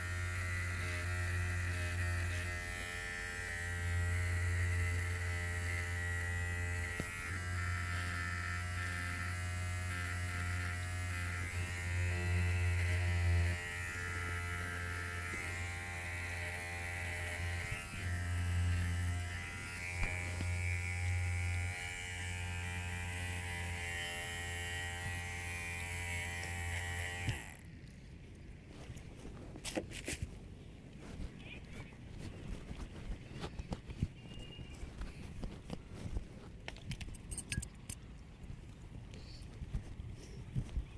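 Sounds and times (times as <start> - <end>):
electric hair clipper buzzing: 0.0 - 27.6.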